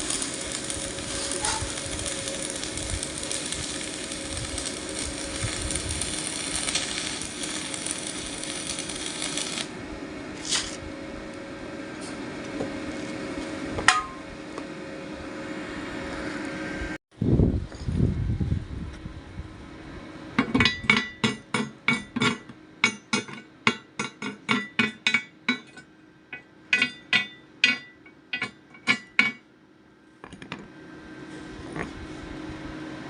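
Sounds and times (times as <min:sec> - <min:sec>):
electric arc welding hiss: 0:00.0 - 0:10.8.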